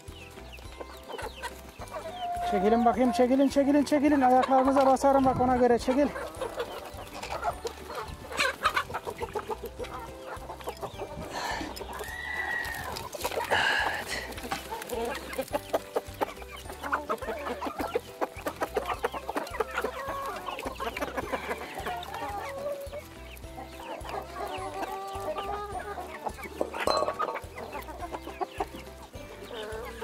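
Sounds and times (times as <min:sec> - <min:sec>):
hens clucking: 0:00.0 - 0:30.0.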